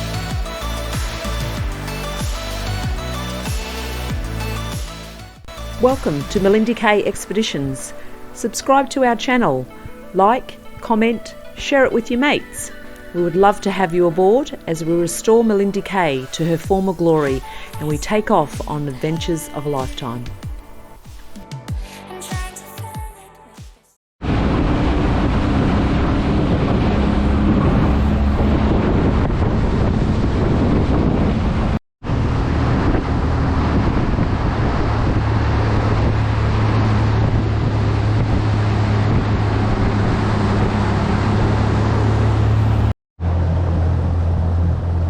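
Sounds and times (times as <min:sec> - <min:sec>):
wind buffeting microphone: 0:24.2 - 0:42.7
outboard motor running: 0:32.4 - 0:45.0.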